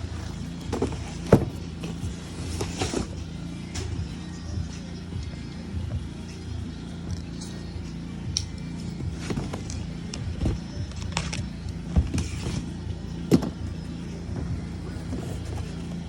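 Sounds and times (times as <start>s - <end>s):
background music: 0.0s - 16.0s
box and packaging knocks and rustles: 0.7s - 3.1s, 9.1s - 13.6s.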